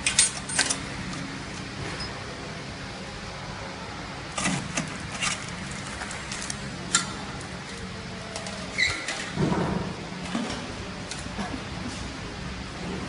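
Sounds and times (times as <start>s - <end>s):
low machine hum: 0.0s - 13.0s.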